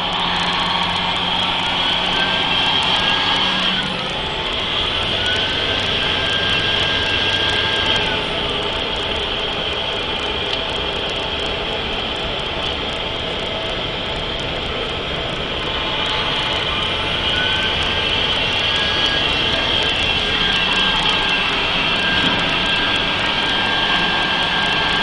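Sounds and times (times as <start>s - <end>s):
turbocharger whistle: 0.0s - 9.0s, 15.6s - 25.0s
diesel truck engine running: 0.0s - 25.0s.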